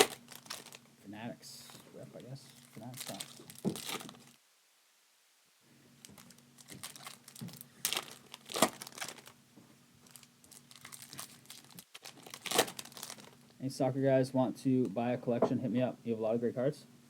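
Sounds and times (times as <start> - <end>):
card wrappers crinkling and tearing: 0.0 - 0.8, 1.7 - 4.4, 6.0 - 9.4, 10.0 - 13.4.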